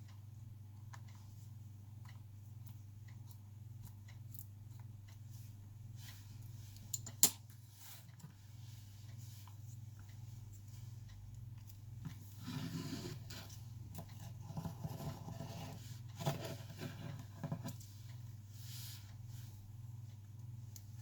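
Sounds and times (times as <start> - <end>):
steady low hum: 0.0 - 21.0
clicks and taps of small tools: 6.9 - 7.4.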